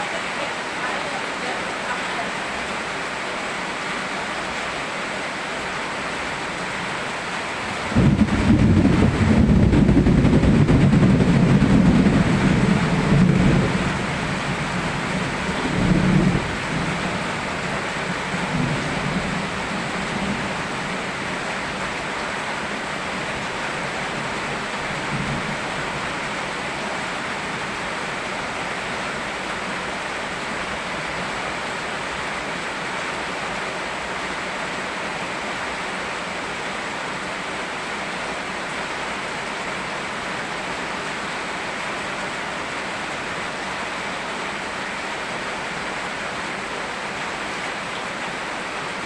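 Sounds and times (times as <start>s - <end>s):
rain hiss: 0.0s - 49.0s
thunder rumbling: 7.7s - 26.2s.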